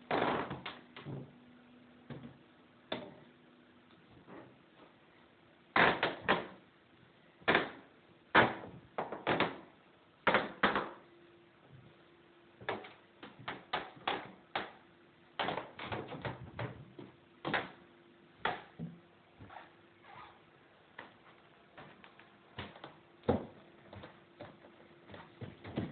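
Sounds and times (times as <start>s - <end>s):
floor creaking and squeaking: 0.1s - 1.4s, 18.4s - 25.9s.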